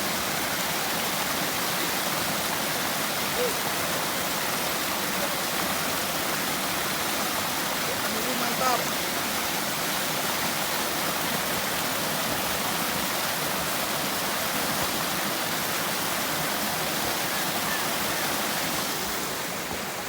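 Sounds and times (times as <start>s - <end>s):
waterfall roaring: 0.0s - 20.0s.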